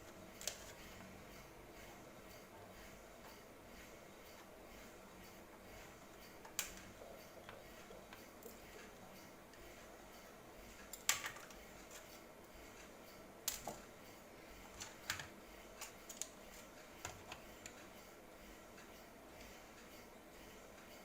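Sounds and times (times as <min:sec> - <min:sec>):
clicks and taps of parts: 0:10.9 - 0:11.6, 0:13.5 - 0:13.8.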